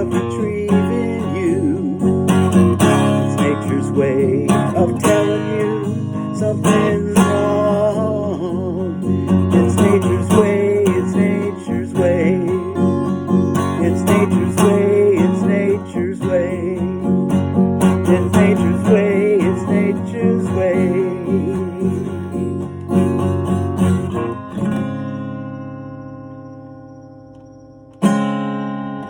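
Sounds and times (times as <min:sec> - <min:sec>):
strummed acoustic guitar: 0:00.0 - 0:29.0
wavering melody line: 0:24.8 - 0:28.0.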